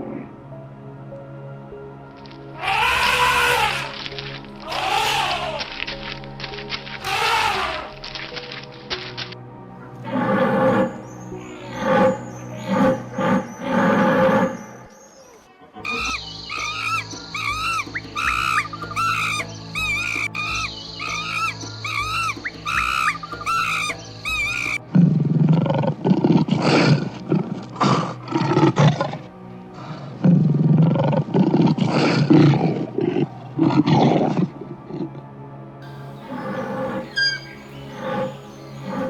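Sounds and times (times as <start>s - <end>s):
background music with drone: 0.0s - 39.0s
big cat roaring and growling: 10.0s - 11.0s
high chirping calls: 10.8s - 24.8s, 35.8s - 39.0s.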